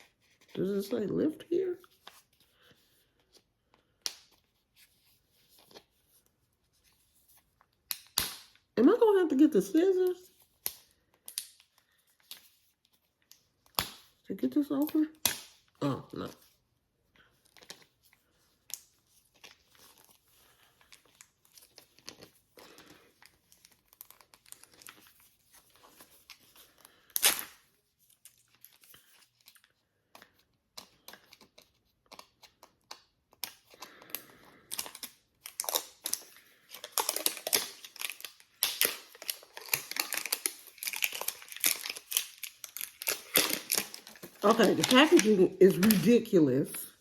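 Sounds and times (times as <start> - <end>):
packaging crinkling and tearing: 17.2 - 47.0
packaging rustling and clicking: 18.7 - 46.2.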